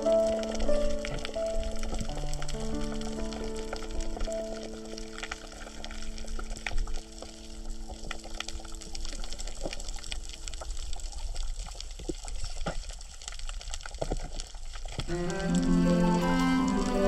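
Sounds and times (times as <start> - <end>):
background music notes: 0.0 - 9.2, 15.1 - 17.0
low watery rumble: 0.0 - 17.0.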